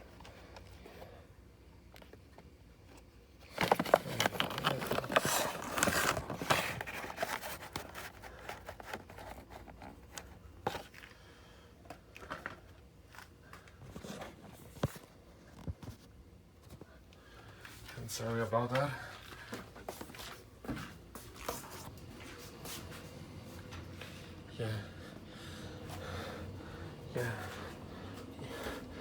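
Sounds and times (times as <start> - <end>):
packaging rustling and crinkling: 3.4 - 11.1.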